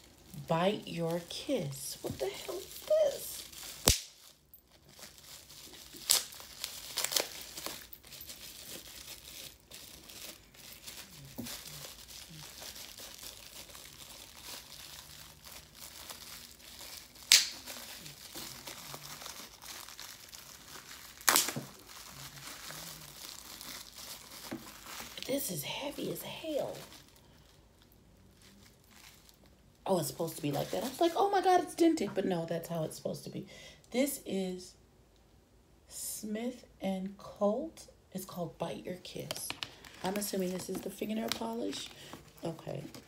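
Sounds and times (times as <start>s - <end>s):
packaging crinkling and rustling: 0.0s - 29.7s, 39.0s - 43.0s.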